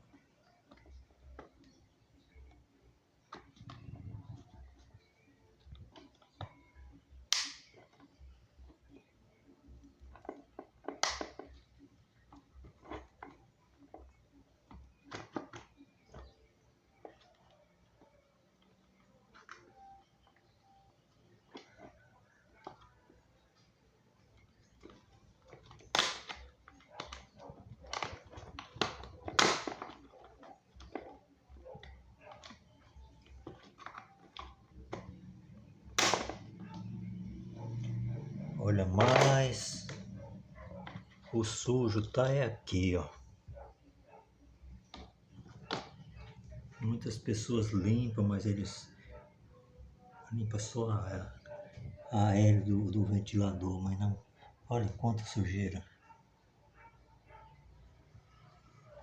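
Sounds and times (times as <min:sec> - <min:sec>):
plastic fan parts clicking and knocking: 0:00.0 - 0:42.4, 0:44.6 - 0:49.2
fan parts clicking and knocking: 0:09.7 - 0:20.5, 0:37.5 - 0:42.4.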